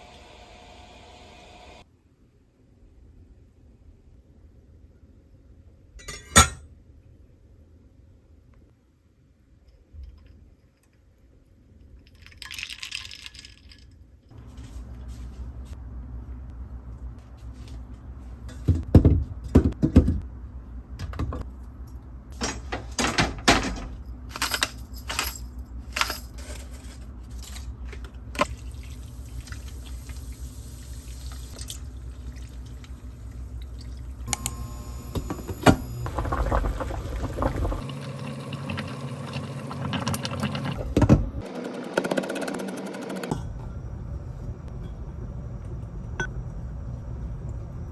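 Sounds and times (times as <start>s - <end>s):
utensils and cookware clattering: 6.0s - 6.6s, 22.4s - 27.7s
water running: 28.4s - 41.4s.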